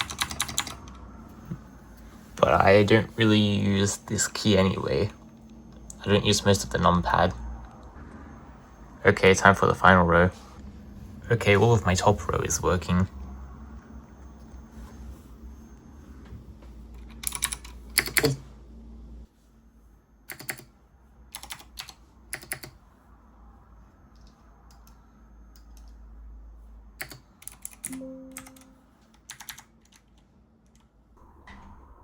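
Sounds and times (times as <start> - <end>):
mechanical keyboard clicks: 0.0 - 1.0, 17.0 - 18.4, 20.3 - 20.7, 21.3 - 22.8, 27.0 - 30.9
brief low tone: 27.9 - 29.0, 31.2 - 32.0
low hum: 27.9 - 29.0, 31.2 - 32.0.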